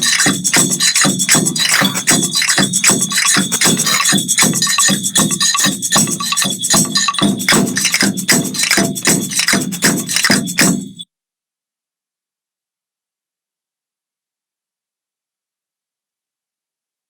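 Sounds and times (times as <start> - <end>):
music with quick percussion beat: 0.0 - 11.0.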